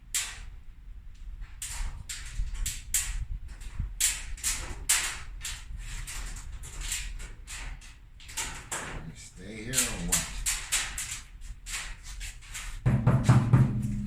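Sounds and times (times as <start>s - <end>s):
wind buffeting microphone: 0.0s - 8.2s.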